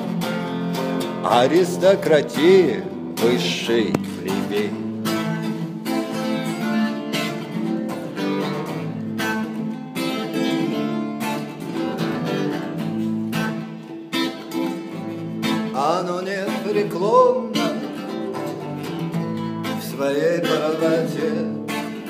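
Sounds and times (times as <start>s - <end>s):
acoustic guitar strumming: 0.0s - 22.0s.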